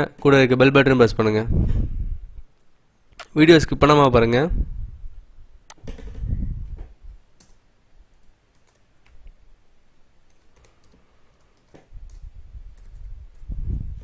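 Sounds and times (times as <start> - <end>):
keyboard keys clicking: 7.4 - 7.6, 8.5 - 9.4, 10.2 - 14.0.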